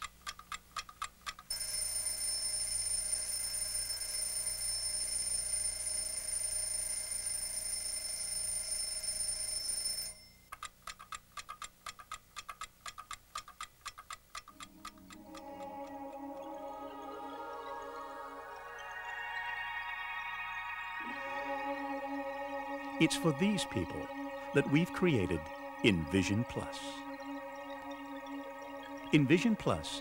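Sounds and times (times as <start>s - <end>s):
clock ticking: 0.0s - 2.6s, 10.5s - 17.0s, 23.1s - 30.0s
alarm clock ringing: 1.5s - 10.5s, 18.5s - 21.6s.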